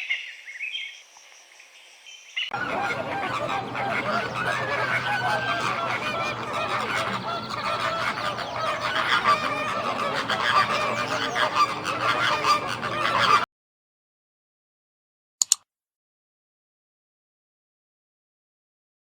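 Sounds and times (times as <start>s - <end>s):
birds honking: 2.5s - 13.4s
sharp click: 15.4s - 15.7s.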